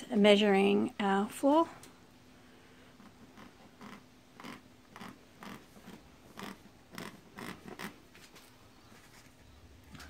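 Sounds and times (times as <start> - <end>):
scratching on floor tile: 3.4 - 9.4.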